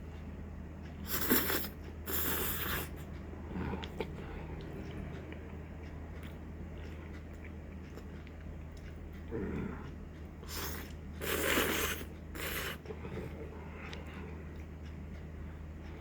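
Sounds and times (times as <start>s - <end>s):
steady low hum: 0.0s - 16.0s
chewing mouth noise: 0.9s - 15.3s
slurping or crunching bursts: 1.1s - 3.0s, 10.5s - 12.9s.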